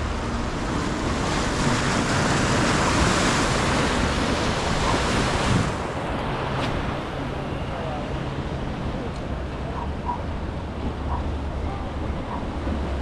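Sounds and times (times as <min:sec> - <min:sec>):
wind buffeting microphone: 0:00.0 - 0:07.4
ocean surf washing ashore: 0:00.0 - 0:13.0.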